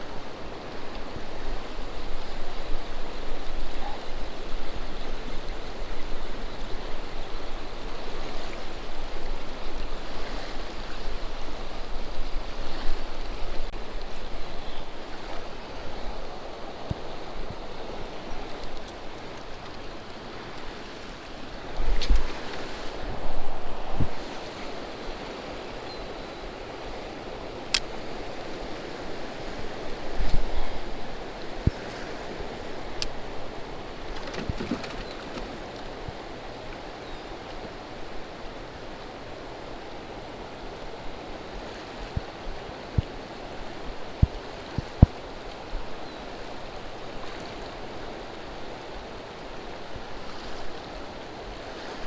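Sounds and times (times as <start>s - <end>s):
wind and water rushing: 0.0s - 52.0s
wind buffeting microphone: 21.5s - 36.2s, 41.0s - 48.4s.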